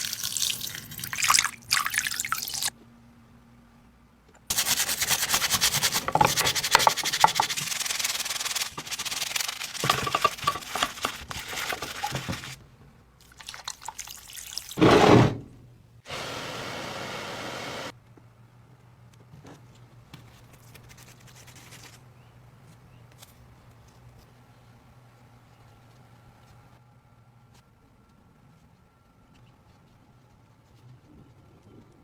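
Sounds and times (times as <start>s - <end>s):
rubbing and scraping on a surface: 4.5s - 12.6s, 20.2s - 22.0s.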